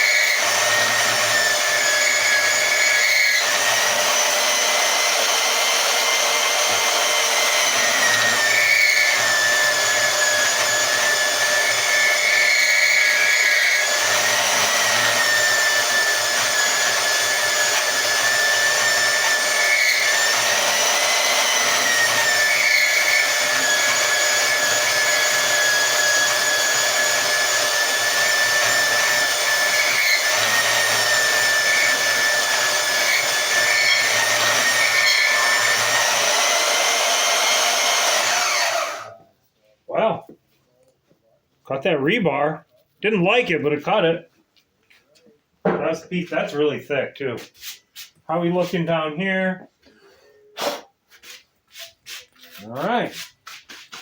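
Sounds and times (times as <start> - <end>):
band saw cutting metal bar: 0.0 - 39.2.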